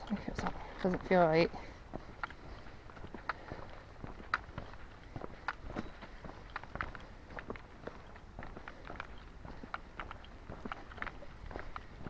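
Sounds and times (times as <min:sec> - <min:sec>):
footsteps crunching on forest floor: 0:00.0 - 0:12.0.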